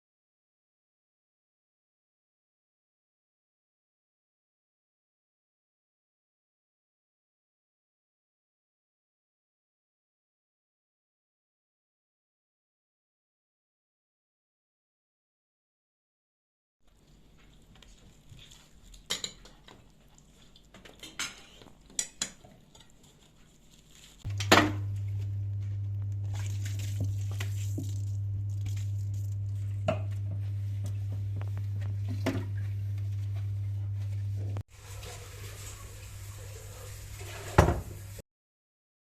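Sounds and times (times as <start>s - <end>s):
dishes and cutlery clinking: 18.8s - 19.9s, 20.7s - 23.4s
steady low hum: 24.3s - 34.6s.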